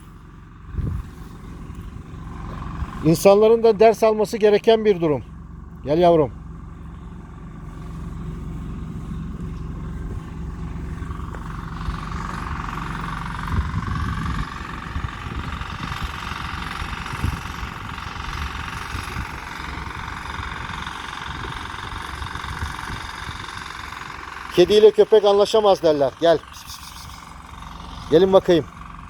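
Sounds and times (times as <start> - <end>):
vehicle engine humming: 0.0 - 29.0.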